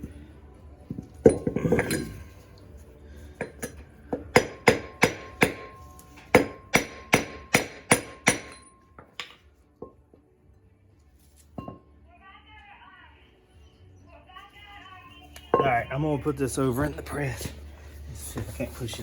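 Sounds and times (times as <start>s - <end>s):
hammer striking metal: 3.4s - 9.4s.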